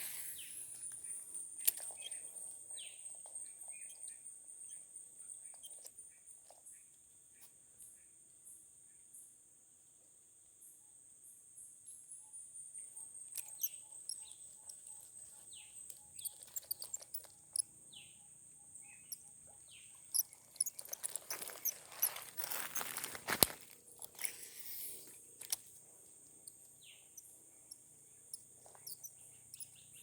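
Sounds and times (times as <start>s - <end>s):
insects droning: 0.0s - 30.0s
rustling: 20.1s - 26.6s.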